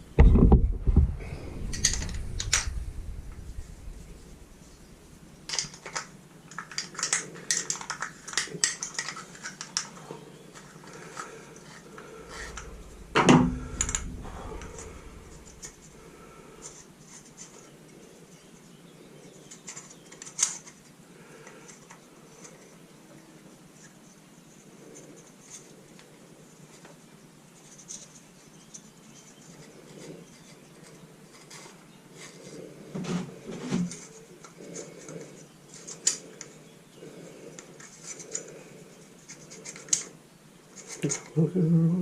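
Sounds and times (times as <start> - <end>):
clicks and clatter of small parts: 5.4 - 12.7, 19.5 - 21.0, 33.9 - 36.6, 37.6 - 41.4
louder knock: 12.9 - 15.9.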